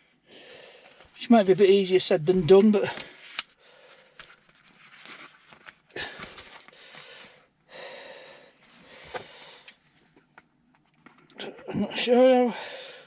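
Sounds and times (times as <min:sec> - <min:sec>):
soft rustling handling noise: 0:00.7 - 0:07.5, 0:08.6 - 0:11.4.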